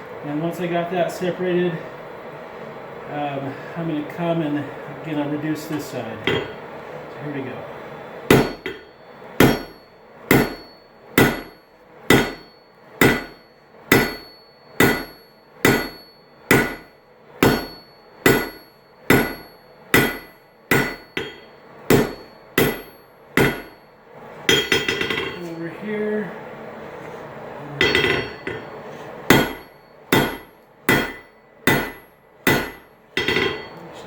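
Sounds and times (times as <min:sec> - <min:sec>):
hammer striking steel on anvil: 0:06.3 - 0:06.6, 0:08.3 - 0:23.9, 0:24.5 - 0:25.6, 0:27.8 - 0:33.8.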